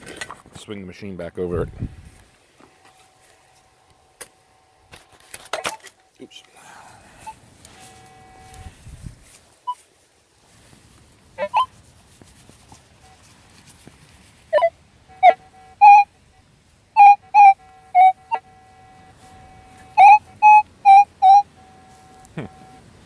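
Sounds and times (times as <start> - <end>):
metal detector beeps: 2.7 - 6.5, 7.2 - 9.0, 14.5 - 22.8.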